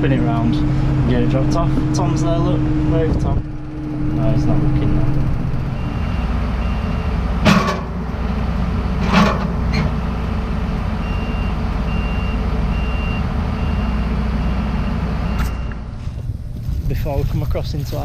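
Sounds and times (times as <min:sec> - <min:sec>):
vehicle engine running: 0:00.0 - 0:18.0
reversing alarm beeping: 0:03.6 - 0:07.8, 0:10.6 - 0:15.9.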